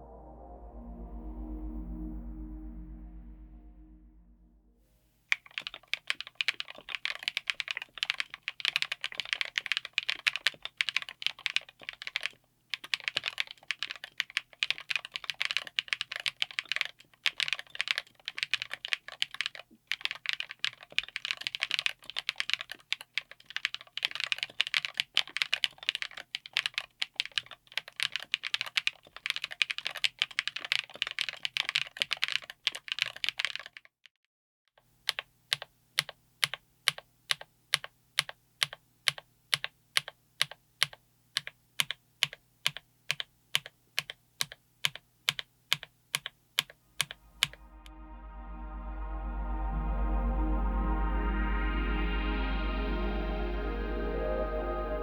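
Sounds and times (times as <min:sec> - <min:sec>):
fast typing on mechanical keyboard: 0:05.3 - 0:34.0, 0:35.0 - 0:47.6.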